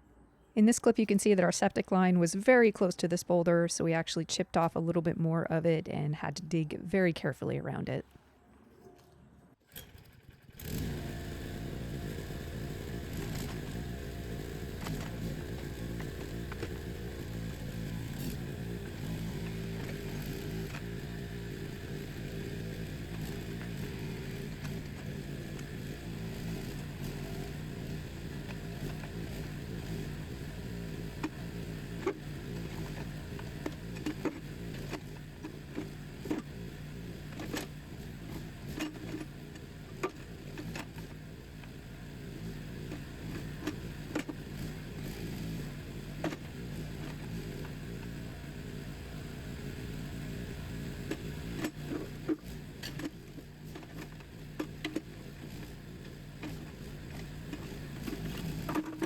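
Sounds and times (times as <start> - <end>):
small gas engine running: 9.7 - 59.0.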